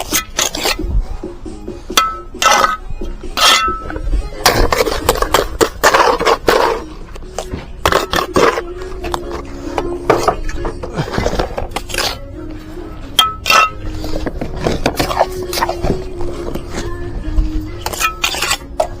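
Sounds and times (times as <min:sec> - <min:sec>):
trowel scraping wet mortar: 0:00.0 - 0:00.9, 0:02.0 - 0:12.3, 0:13.2 - 0:16.0, 0:17.8 - 0:19.0
background music: 0:00.0 - 0:19.0
trowel knocking against bricks: 0:01.9 - 0:02.8, 0:13.2 - 0:15.2.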